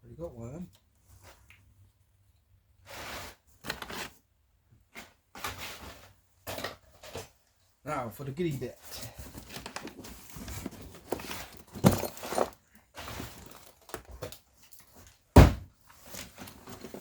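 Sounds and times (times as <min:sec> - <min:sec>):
packaging rustling: 0:09.2 - 0:15.3
heavy thud: 0:15.4 - 0:15.7.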